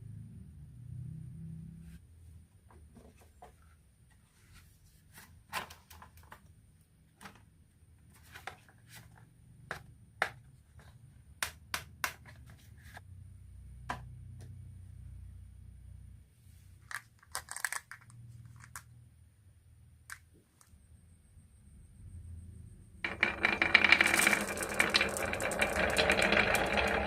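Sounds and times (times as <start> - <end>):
marbles clacking on wooden track: 23.0 - 27.0.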